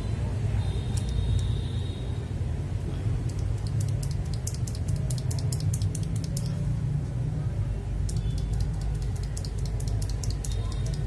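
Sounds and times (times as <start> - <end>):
mechanical keyboard clicks: 3.3 - 6.6, 8.0 - 11.0.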